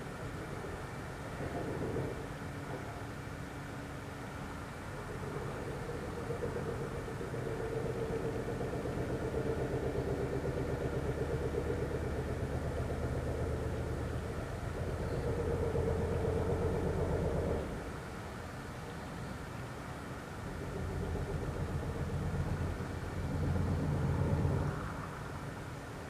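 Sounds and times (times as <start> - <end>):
pulsating knocking throb: 5.0 - 17.8.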